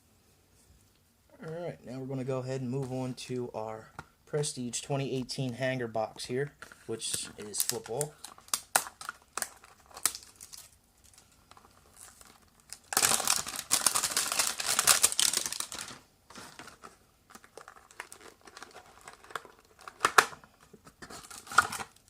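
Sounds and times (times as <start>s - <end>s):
packaging crinkling: 6.7s - 22.0s.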